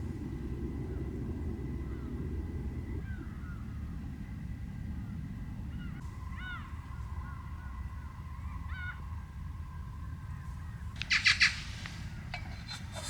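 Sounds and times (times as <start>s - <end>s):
steady low rumble: 0.0s - 13.0s
birds calling: 5.0s - 13.0s.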